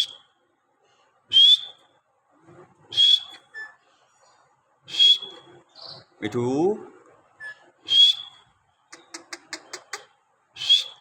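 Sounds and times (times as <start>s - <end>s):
parrot whistling calls: 1.3s - 1.8s, 2.9s - 3.8s, 4.9s - 5.5s, 7.4s - 8.4s, 10.6s - 11.0s.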